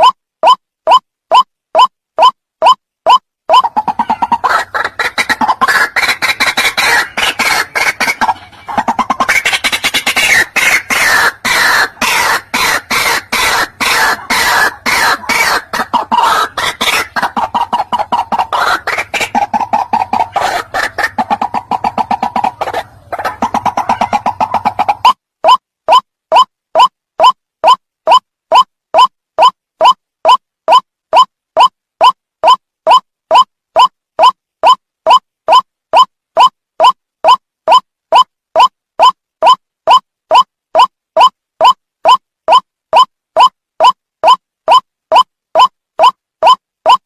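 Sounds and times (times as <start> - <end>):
bird harsh repeated calls: 0.0 - 30.0.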